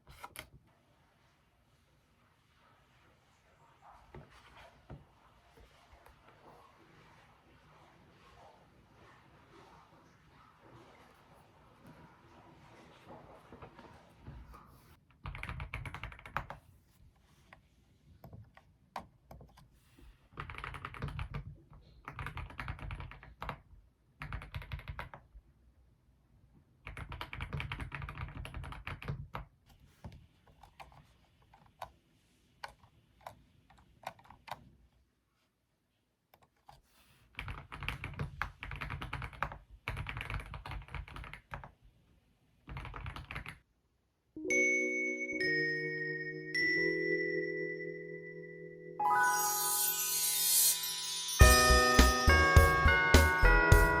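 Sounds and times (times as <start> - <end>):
typing on computer keyboard: 15.1 - 16.6, 20.3 - 25.3, 26.8 - 29.5, 32.6 - 34.6, 37.4 - 41.8, 42.6 - 43.6.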